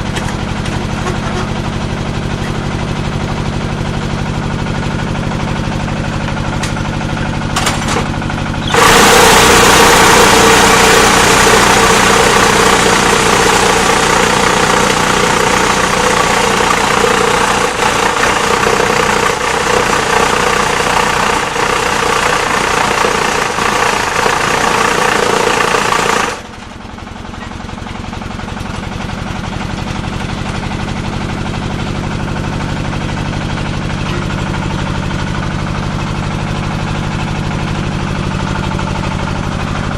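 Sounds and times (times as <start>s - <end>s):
harsh mechanical machine noise: 0.0s - 36.0s
diesel engine running: 0.0s - 39.9s.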